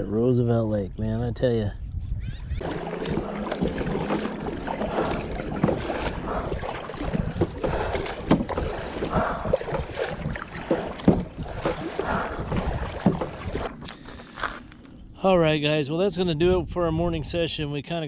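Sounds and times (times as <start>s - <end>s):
wind on microphone: 0.0s - 17.9s
water splashing against hull: 2.6s - 15.0s.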